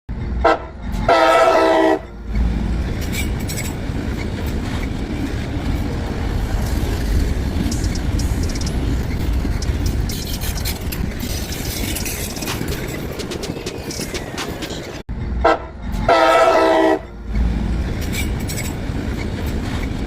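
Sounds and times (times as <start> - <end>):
train rumbling past: 0.1 - 20.0
locomotive horn blast: 0.4 - 2.1, 15.4 - 17.1.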